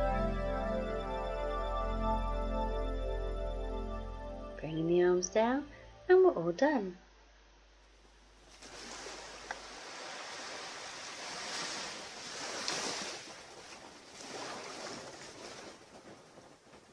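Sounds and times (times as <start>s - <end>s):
ocean waves on beach: 8.5s - 16.3s.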